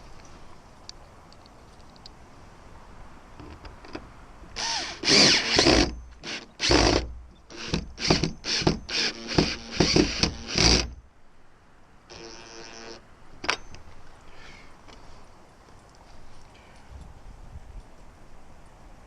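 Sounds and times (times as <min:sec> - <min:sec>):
drill driving screws: 0:04.6 - 0:11.0, 0:12.1 - 0:13.0.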